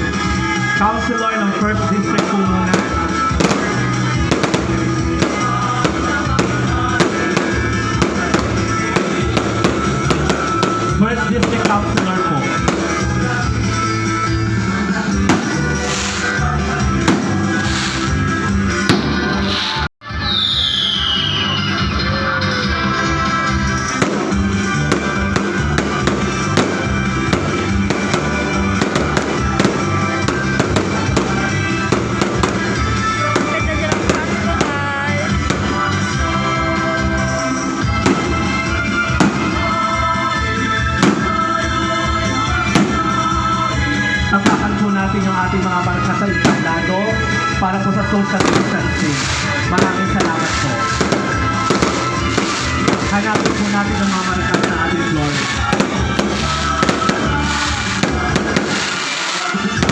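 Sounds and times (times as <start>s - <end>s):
bass line: 0.0s - 20.2s, 21.7s - 59.0s
music playing: 0.0s - 59.9s
fireworks cracking: 1.5s - 19.9s, 23.4s - 59.9s
steady drum beat: 2.0s - 19.3s, 23.8s - 45.2s, 46.1s - 46.9s, 48.3s - 59.9s.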